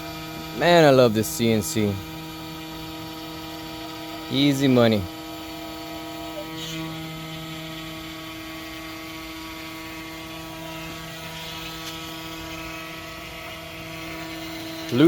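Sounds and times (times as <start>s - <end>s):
router motors humming: 0.0s - 15.0s.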